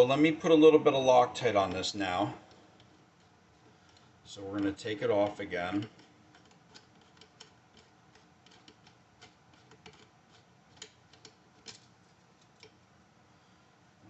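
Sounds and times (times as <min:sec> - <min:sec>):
small metal parts clicking: 0:03.9 - 0:12.8.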